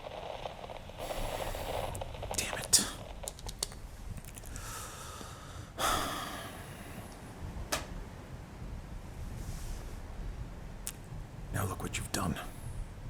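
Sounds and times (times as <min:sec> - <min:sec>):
faint clicks: 0:00.0 - 0:05.4
low steady rumble: 0:00.0 - 0:11.6.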